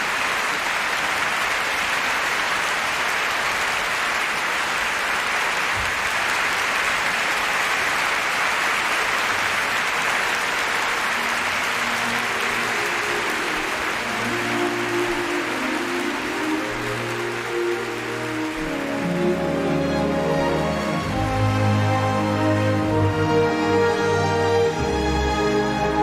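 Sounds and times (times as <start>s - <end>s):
audience applauding: 0.0s - 26.0s.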